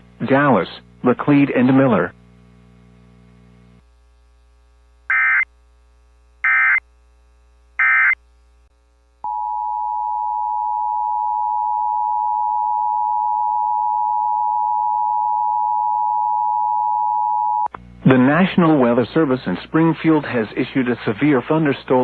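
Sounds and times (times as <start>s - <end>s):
steady attention tone: 9.2s - 17.7s.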